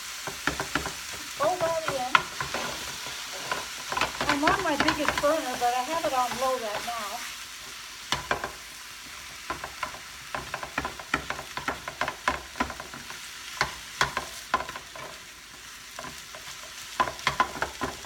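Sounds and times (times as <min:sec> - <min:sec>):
meat and onions sizzling: 0:00.0 - 0:18.0
utensil scraping a pan: 0:00.2 - 0:07.1.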